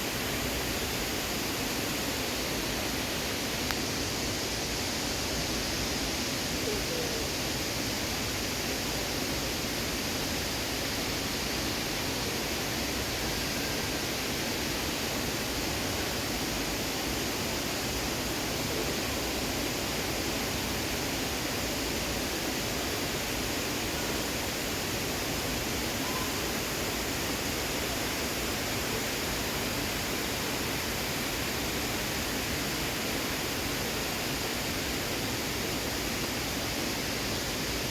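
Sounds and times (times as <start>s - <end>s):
steady rain: 0.0s - 37.9s.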